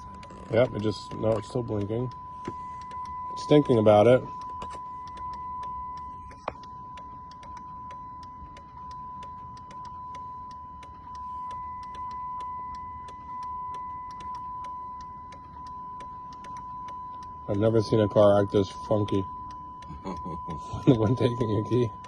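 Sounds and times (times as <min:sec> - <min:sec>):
high electronic tone: 0:00.0 - 0:22.0
low hum: 0:00.0 - 0:22.0
rapid uneven ticking: 0:00.0 - 0:22.0
click: 0:13.1 - 0:17.3.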